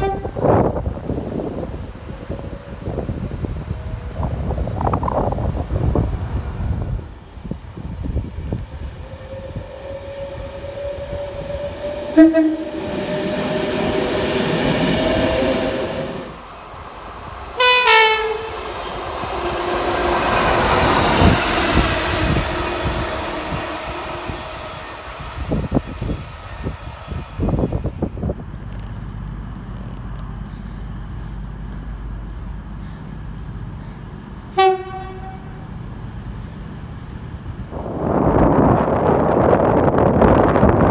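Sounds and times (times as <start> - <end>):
train horn blasts: 0.0 - 1.0, 12.1 - 16.4, 17.6 - 25.6, 34.5 - 35.7
train rumbling past: 0.0 - 40.9.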